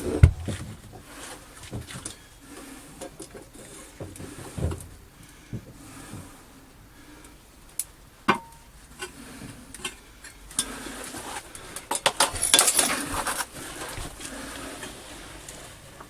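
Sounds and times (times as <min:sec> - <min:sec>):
rattling and scraping: 0:00.0 - 0:06.5, 0:08.9 - 0:16.0
hard objects clinking: 0:11.9 - 0:13.5.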